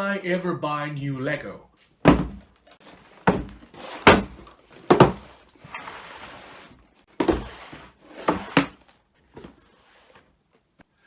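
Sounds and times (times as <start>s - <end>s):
rustling or sliding noise: 5.2s - 10.7s.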